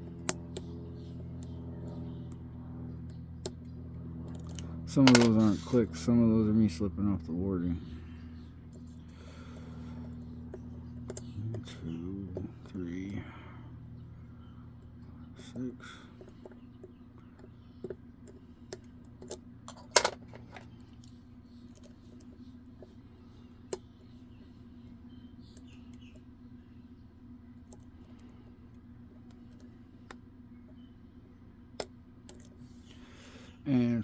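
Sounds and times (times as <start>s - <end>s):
steady low hum: 0.0s - 34.0s
lock pick clicking and scraping: 18.8s - 20.7s.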